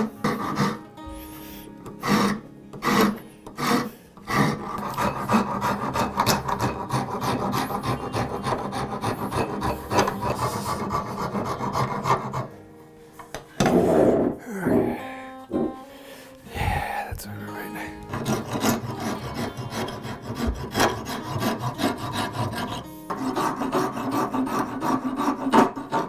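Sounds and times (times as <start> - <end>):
hand rasp filing wood: 0.0 - 0.9, 1.9 - 12.5, 18.0 - 26.0.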